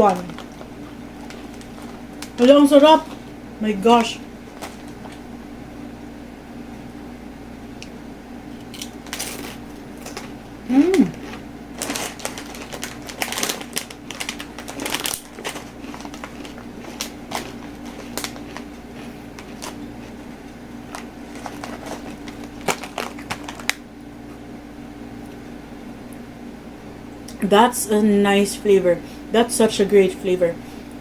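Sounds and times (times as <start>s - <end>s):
crispy chips crunching: 0.0s - 3.3s, 4.0s - 5.3s, 8.6s - 23.8s
steady low hum: 0.0s - 31.0s.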